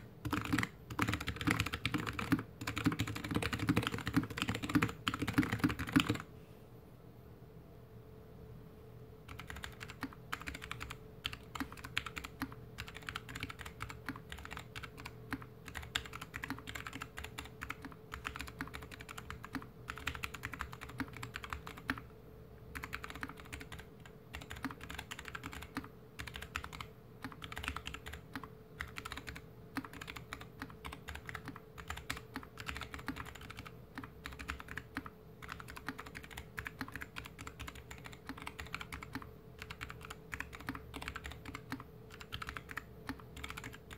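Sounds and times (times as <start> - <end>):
mechanical keyboard typing: 0.0 - 6.3, 9.3 - 22.1, 22.7 - 43.9.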